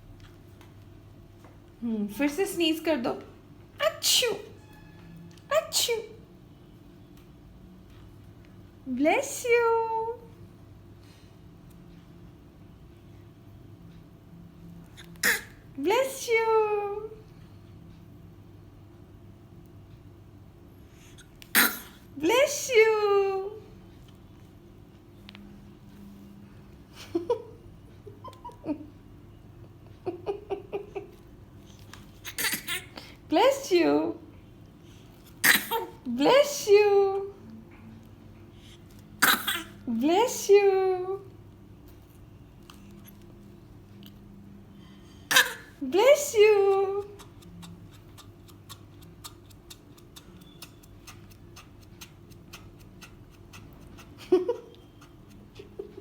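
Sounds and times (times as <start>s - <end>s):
toddler fake sneeze: 15.0s - 15.6s, 21.5s - 22.0s, 32.2s - 33.0s, 35.4s - 36.0s, 39.2s - 39.8s, 45.3s - 45.8s
toddler giggling: 32.3s - 33.0s.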